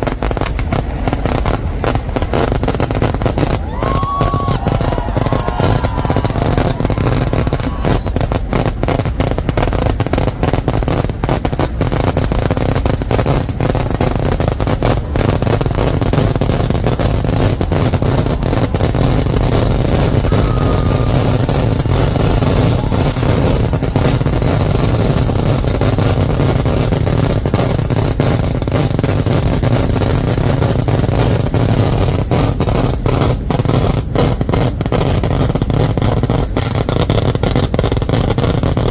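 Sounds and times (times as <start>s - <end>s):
fireworks crackling: 0.0s - 38.9s
fireworks exploding: 0.0s - 38.9s.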